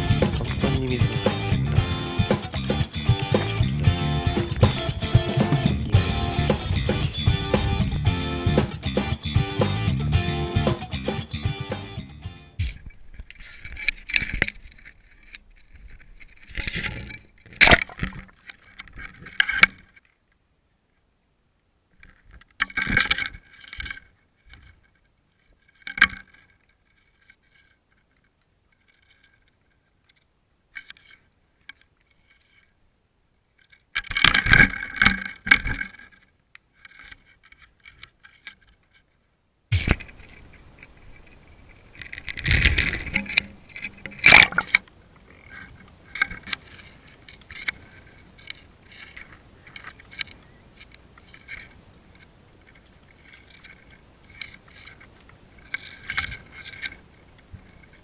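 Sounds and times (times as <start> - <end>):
clinking and scraping rattles: 0.0 - 10.0, 39.9 - 58.0.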